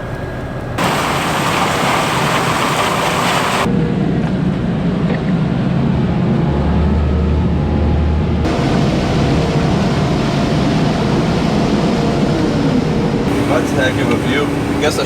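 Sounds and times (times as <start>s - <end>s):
machinery rushing hiss: 0.0s - 3.7s, 13.3s - 15.0s
low engine hum: 0.0s - 15.0s.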